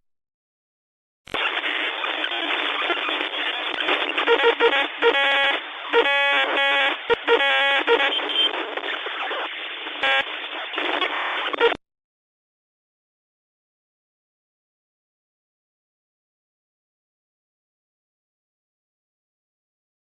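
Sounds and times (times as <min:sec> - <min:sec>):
harsh buzzing tone: 0:01.3 - 0:10.3
radio static hiss: 0:01.3 - 0:11.8.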